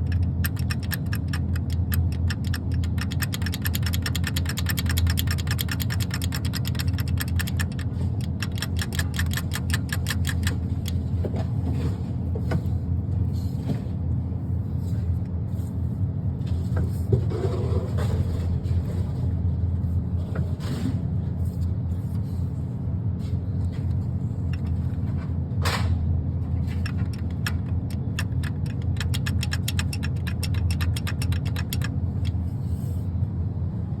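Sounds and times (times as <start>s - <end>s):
fast light ticking: 0.0s - 11.0s, 26.8s - 32.4s.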